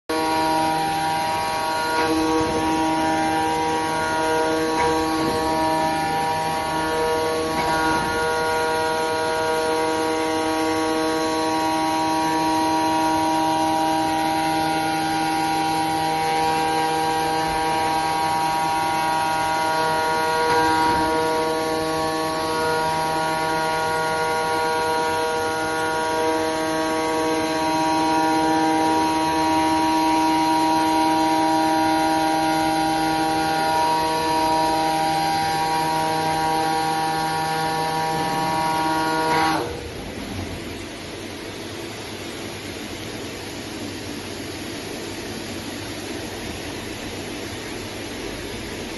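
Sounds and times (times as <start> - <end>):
cnc machine whine: 0.1 - 48.9.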